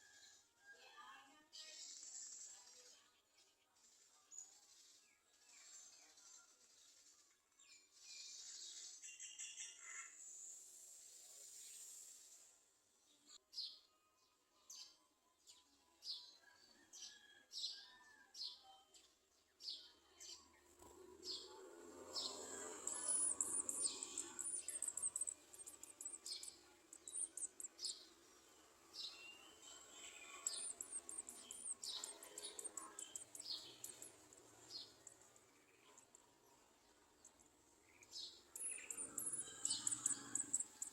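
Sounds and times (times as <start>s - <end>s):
high bird twittering: 21.3s - 28.1s, 29.0s - 35.3s, 38.0s - 40.9s.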